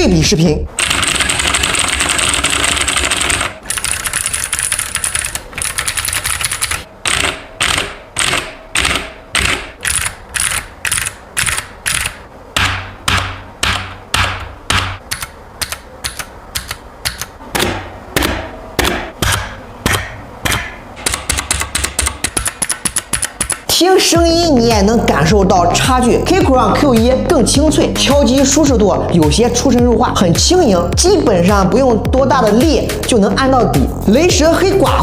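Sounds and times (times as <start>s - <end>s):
mechanical keyboard keys clicking: 0.8s - 12.2s, 13.1s - 17.4s, 19.3s - 23.7s.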